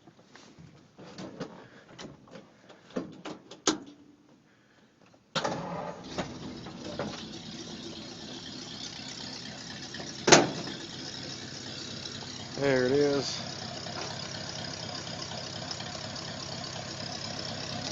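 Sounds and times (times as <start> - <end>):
truck engine running: 6.0 - 17.9.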